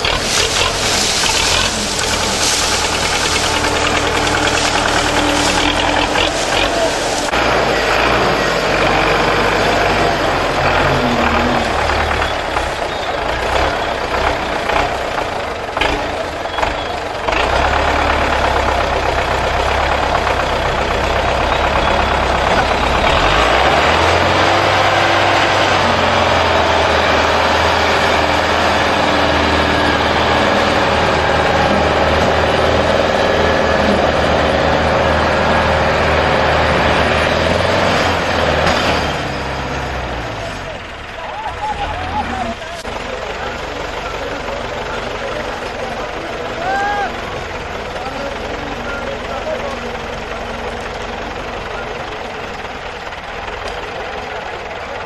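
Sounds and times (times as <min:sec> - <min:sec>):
diesel tractor engines running hard: 0:00.0 - 0:55.0.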